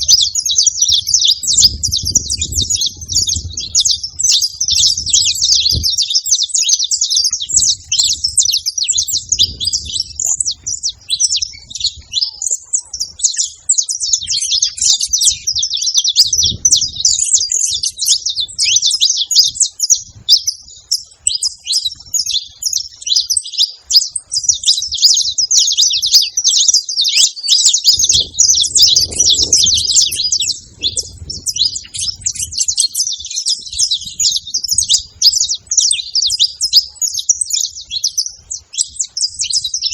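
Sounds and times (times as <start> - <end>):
finches chirping rapidly: 0.0 - 39.9.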